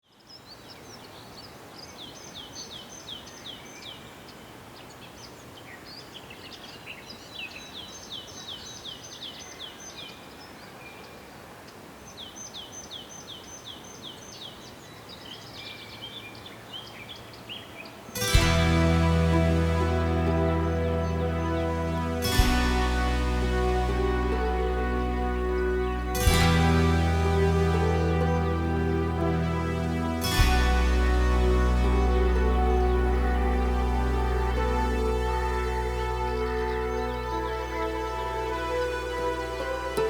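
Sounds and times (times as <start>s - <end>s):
steady outdoor hiss: 0.1s - 40.0s
loud music: 18.2s - 40.0s.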